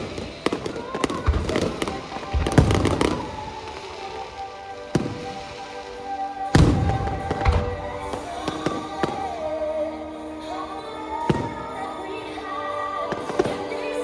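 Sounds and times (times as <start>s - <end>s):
firework shells bursting: 0.0s - 5.8s
music playing: 0.0s - 14.0s.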